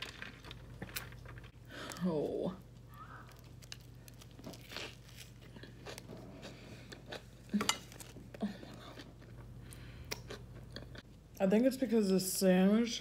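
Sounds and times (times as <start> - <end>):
chewing sandwich with soft crunches: 3.0 - 11.1.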